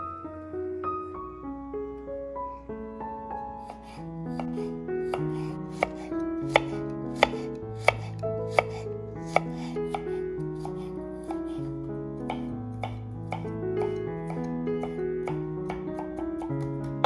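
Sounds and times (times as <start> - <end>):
soft piano music: 0.0 - 17.0
knife chopping on cutting board: 3.7 - 11.5, 12.3 - 17.0.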